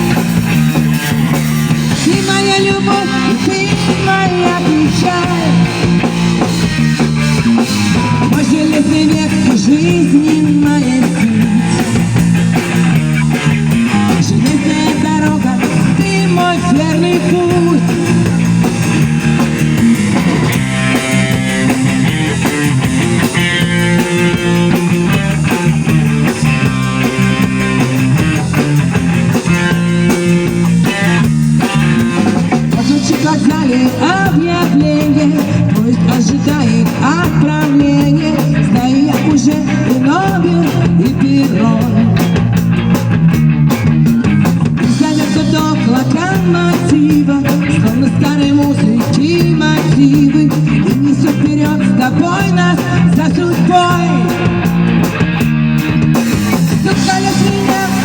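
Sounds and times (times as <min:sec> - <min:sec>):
person singing: 0:00.0 - 0:06.7, 0:07.5 - 0:12.3, 0:13.1 - 0:21.1, 0:31.7 - 0:42.5, 0:44.8 - 0:54.8, 0:56.5 - 0:58.0
rock band playing: 0:00.0 - 0:58.0.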